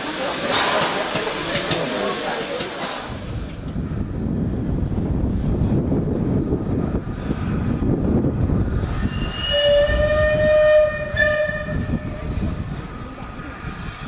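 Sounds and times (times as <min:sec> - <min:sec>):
train rumbling: 0:00.0 - 0:14.0
steam locomotive whistle: 0:09.0 - 0:12.4.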